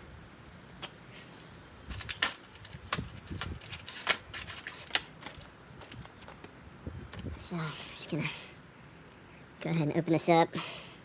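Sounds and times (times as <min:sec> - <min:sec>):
plastic packaging crinkling: 0:01.9 - 0:06.4.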